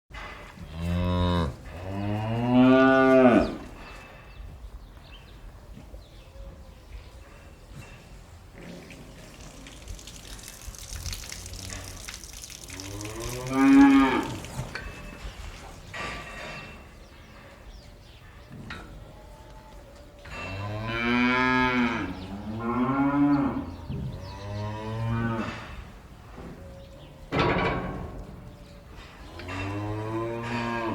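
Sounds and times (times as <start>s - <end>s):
low barn background: 0.1s - 30.9s
cow mooing: 0.7s - 3.6s, 12.7s - 14.8s, 20.5s - 25.6s, 29.4s - 30.9s
cattle mooing: 0.8s - 3.6s, 12.7s - 14.8s.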